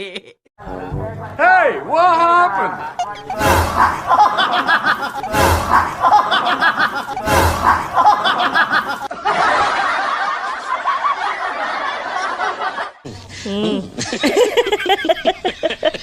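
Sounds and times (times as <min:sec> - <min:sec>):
crowd laughing: 0:02.7 - 0:16.0.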